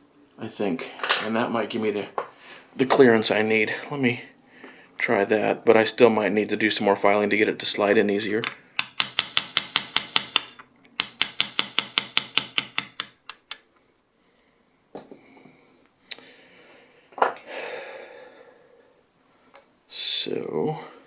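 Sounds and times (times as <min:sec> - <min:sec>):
metal clicks: 0:08.4 - 0:13.7.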